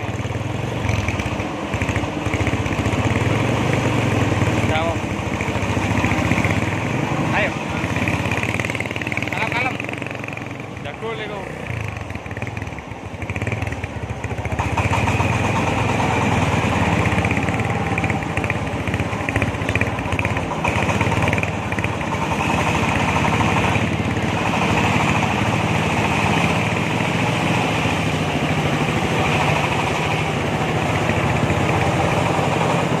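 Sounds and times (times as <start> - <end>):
engine hum: 0.0 - 33.0
corn sheller machine rattling: 14.5 - 26.6.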